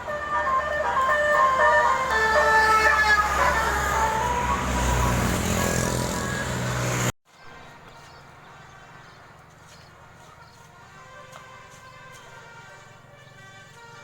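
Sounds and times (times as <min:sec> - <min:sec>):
multi-tone bus horn tune: 0:00.0 - 0:07.1, 0:10.0 - 0:14.0
engine and road noise: 0:00.0 - 0:14.0.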